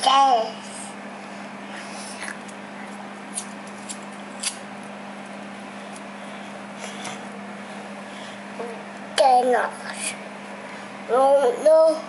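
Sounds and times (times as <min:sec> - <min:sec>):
refrigerator hum: 0:00.0 - 0:12.0.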